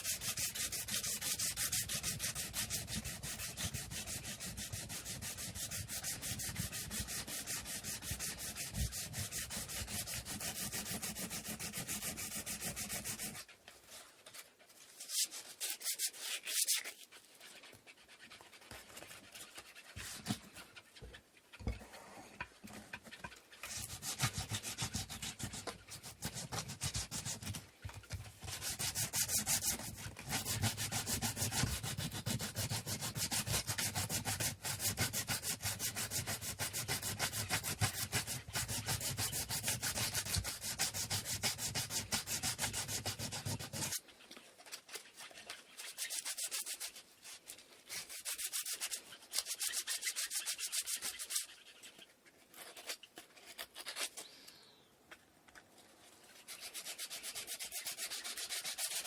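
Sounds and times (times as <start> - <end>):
sandpaper rubbing on wood: 0.0 - 13.4, 23.7 - 27.6, 28.4 - 44.0, 45.8 - 47.0, 47.9 - 51.5, 56.4 - 59.0.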